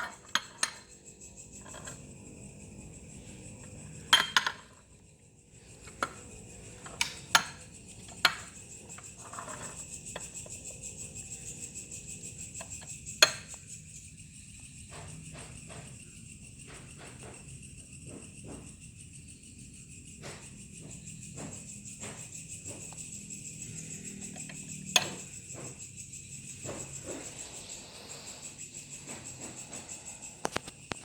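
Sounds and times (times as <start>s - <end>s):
insects trilling: 0.0s - 31.0s.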